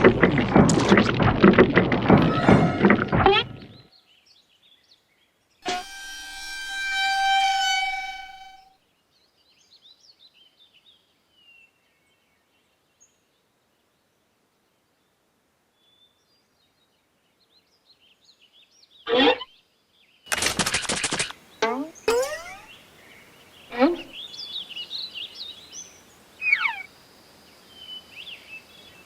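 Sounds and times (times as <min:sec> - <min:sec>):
sustained pitched tone: 0:05.7 - 0:08.7, 0:21.6 - 0:22.7
faint birdsong chirps: 0:08.9 - 0:20.2, 0:21.4 - 0:29.0.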